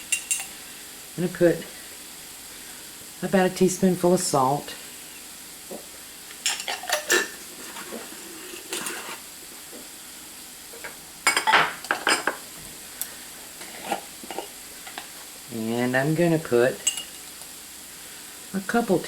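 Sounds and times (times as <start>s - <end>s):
spoon scraping a skillet: 0.0s - 0.6s, 6.4s - 9.3s, 13.5s - 15.3s, 16.8s - 17.3s
food sizzling: 0.0s - 19.0s.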